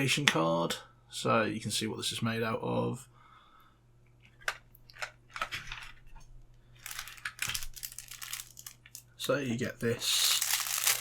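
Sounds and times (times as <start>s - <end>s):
packaging rustling: 6.8s - 9.1s, 9.8s - 11.0s.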